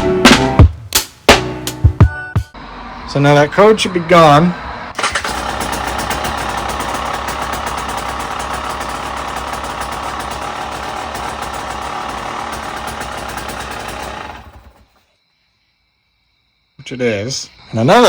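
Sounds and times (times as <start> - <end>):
two-stroke engine idling: 5.0 - 15.0.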